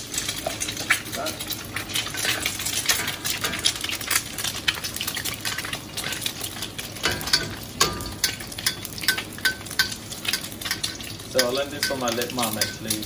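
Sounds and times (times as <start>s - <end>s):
egg sizzling in hot oil: 0.0s - 13.0s
metal utensil striking wok: 7.0s - 13.0s.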